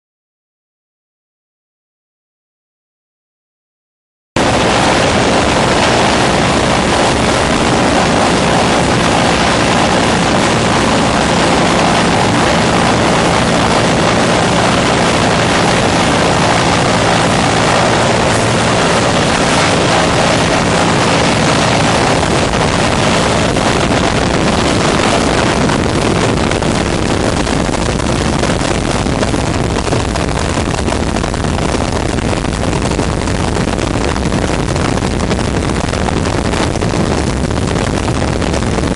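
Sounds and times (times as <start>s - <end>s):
helicopter engine and rotor: 4.4s - 29.6s
low hum: 4.4s - 38.9s.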